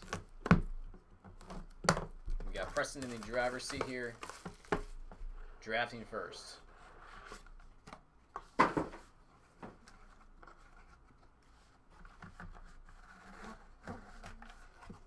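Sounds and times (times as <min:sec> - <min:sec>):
packaging rustling: 0:02.3 - 0:05.1.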